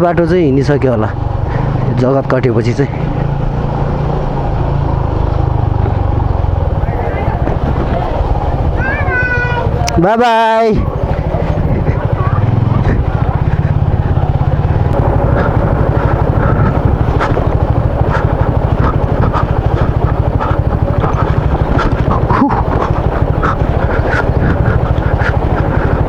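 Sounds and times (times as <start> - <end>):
motorcycle engine running: 0.0 - 26.0
wind noise: 10.7 - 26.0.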